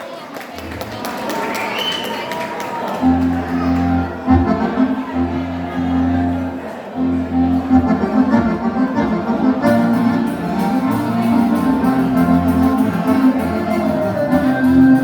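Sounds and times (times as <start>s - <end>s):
live band dance music: 3.0s - 15.0s.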